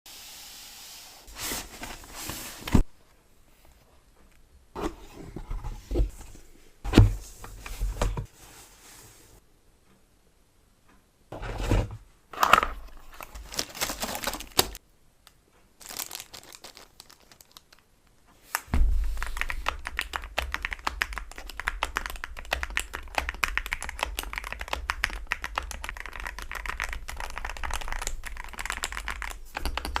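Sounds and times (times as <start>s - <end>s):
packaging crinkling and tearing: 12.4s - 14.8s, 15.8s - 17.9s.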